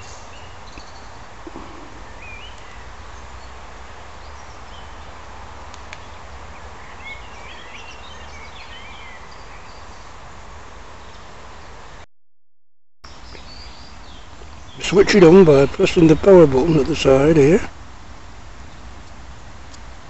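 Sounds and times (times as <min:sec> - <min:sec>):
birds chirping: 0:00.0 - 0:05.3, 0:06.0 - 0:11.9, 0:13.1 - 0:17.8
steady hiss and low rumble: 0:00.0 - 0:12.0, 0:13.1 - 0:20.0.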